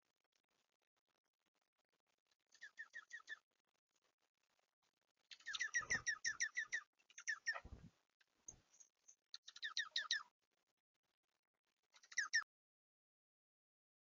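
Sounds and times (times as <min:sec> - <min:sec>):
small bird chirping: 0:02.3 - 0:03.4, 0:05.2 - 0:07.8, 0:08.5 - 0:10.3, 0:11.9 - 0:12.5.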